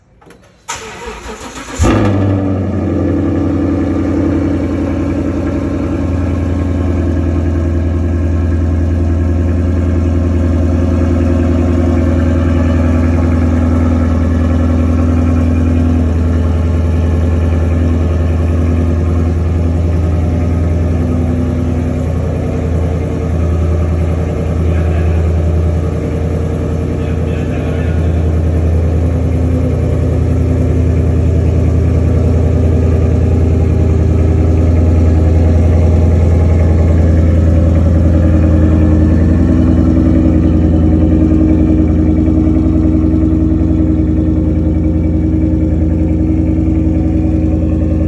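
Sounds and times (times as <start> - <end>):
car engine starting and idling: 0.0 - 48.0.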